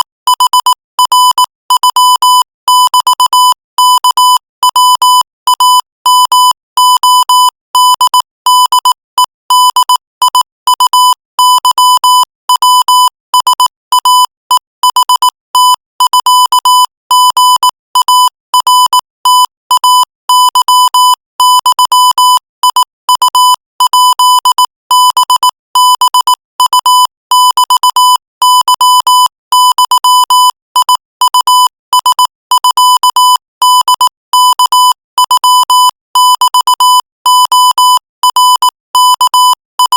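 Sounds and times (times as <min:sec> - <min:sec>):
morse code beeping: 0:00.0 - 0:02.0, 0:37.4 - 0:39.9.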